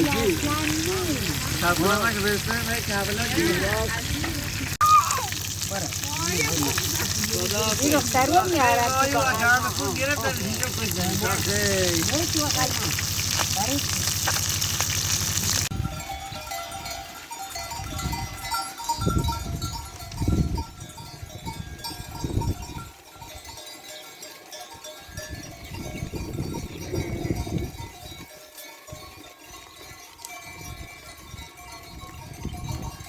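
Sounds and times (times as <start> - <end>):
livestock bells clinking: 0.0 - 4.3, 5.5 - 15.0, 15.7 - 33.0
low rumbles: 0.0 - 16.1.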